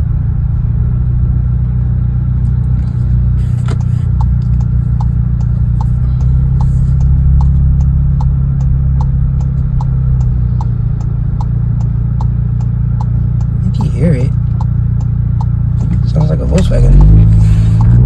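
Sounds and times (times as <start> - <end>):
low exhaust hum: 0.0 - 18.0
light regular ticking: 2.5 - 18.0.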